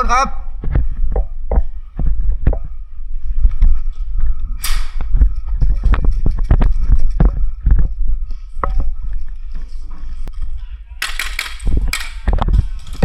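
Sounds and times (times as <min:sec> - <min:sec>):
footsteps: 0:00.0 - 0:13.0
handling noise rumble: 0:10.8 - 0:13.0.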